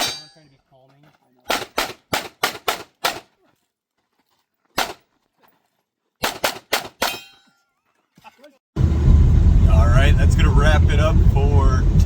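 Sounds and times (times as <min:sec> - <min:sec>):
pistol shots: 0:01.5 - 0:03.3, 0:04.8 - 0:05.0, 0:06.2 - 0:07.2.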